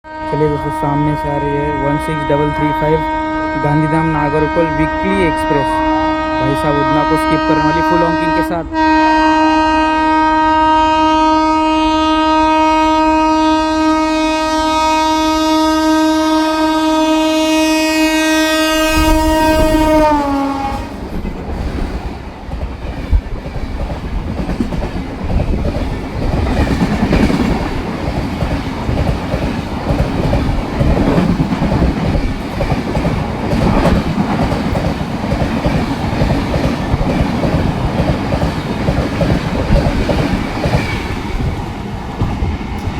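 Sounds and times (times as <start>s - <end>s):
locomotive horn blast: 0.0s - 21.0s
train wheels clattering: 20.8s - 42.9s.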